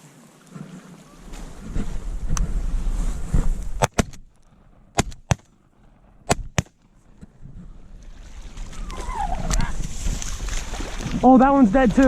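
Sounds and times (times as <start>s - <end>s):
wind noise on microphone: 1.1s - 5.2s, 7.2s - 12.0s
shotgun shots: 3.8s - 4.3s, 5.0s - 5.5s, 6.3s - 6.8s.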